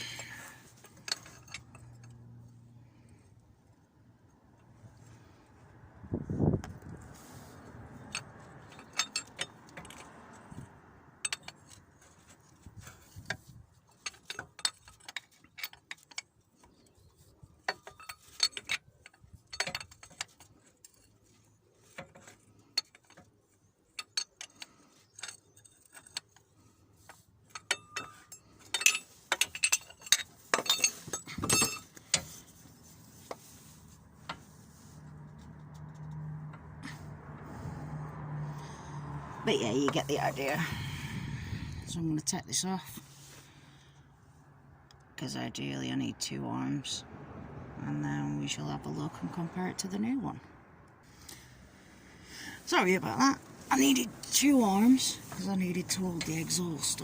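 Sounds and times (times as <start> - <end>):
spanner clinking on metal: 0.0 - 2.3, 8.0 - 10.6, 11.2 - 16.6, 17.6 - 21.3, 23.9 - 32.5.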